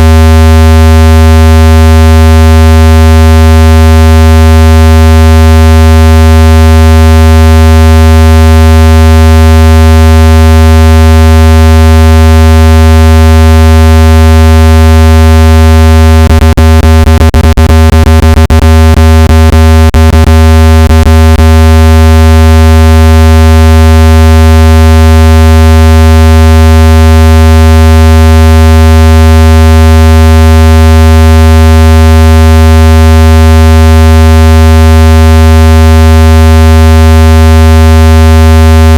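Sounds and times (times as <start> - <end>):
buzzy low electronic tone: 16.2 - 21.5.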